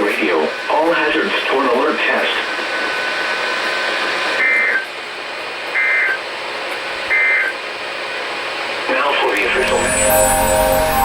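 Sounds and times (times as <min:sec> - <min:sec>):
radio hiss: 0:00.1 - 0:04.9, 0:05.7 - 0:06.3, 0:07.0 - 0:07.6
shrill digital data bursts: 0:09.4 - 0:11.0.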